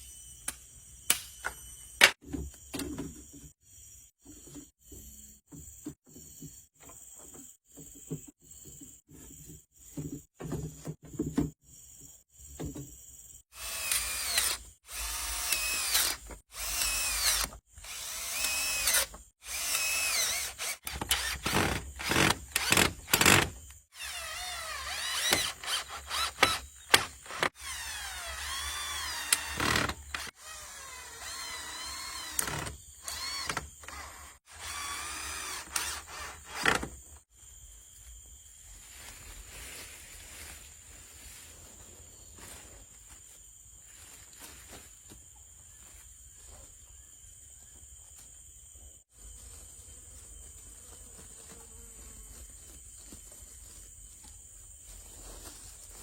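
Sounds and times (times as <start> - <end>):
power tool motor whirring: 13.6 - 36.9.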